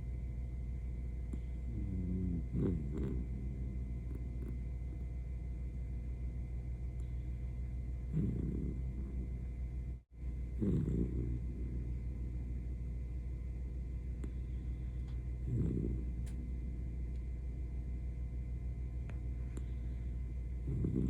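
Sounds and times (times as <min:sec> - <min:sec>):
dog snoring: 0:01.3 - 0:05.1, 0:07.0 - 0:09.6, 0:10.6 - 0:12.7, 0:14.1 - 0:17.0, 0:19.5 - 0:21.0.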